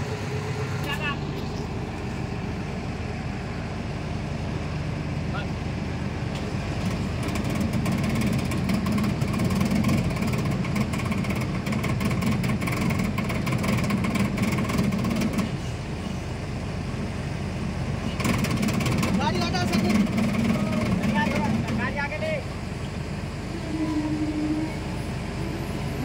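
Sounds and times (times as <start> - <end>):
diesel engine clattering: 0.0 - 26.0.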